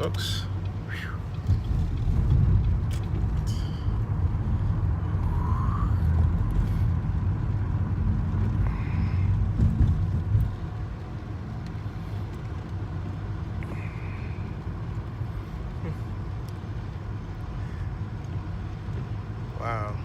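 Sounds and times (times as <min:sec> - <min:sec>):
car engine and tyres on wet road: 0:00.0 - 0:20.0.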